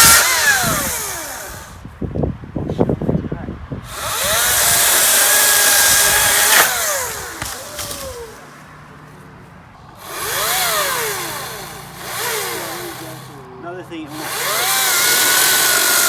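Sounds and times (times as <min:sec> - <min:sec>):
chainsaw cutting wood: 0:00.0 - 0:01.8, 0:03.9 - 0:08.5, 0:09.8 - 0:16.0.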